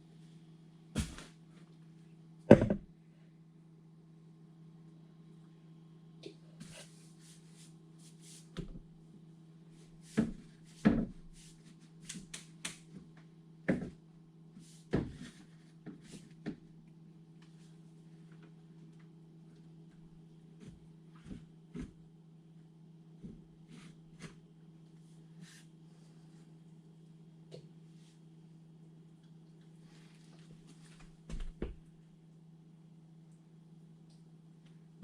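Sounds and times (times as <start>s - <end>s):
steady low hum: 0.0s - 35.0s
plastic pipe knocking and clattering: 2.5s - 2.9s.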